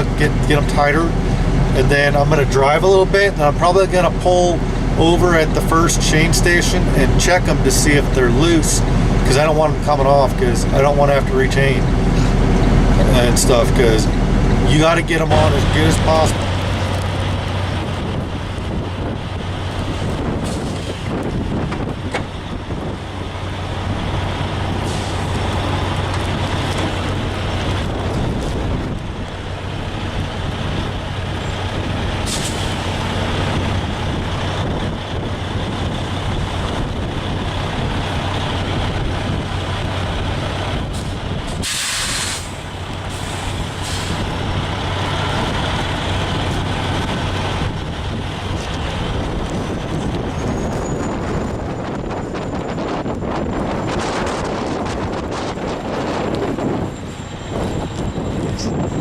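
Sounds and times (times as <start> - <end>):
diesel truck engine running: 0.0 - 59.0
wind noise: 0.0 - 59.0
air brakes hissing: 24.8 - 25.3, 32.2 - 33.0, 40.9 - 44.3.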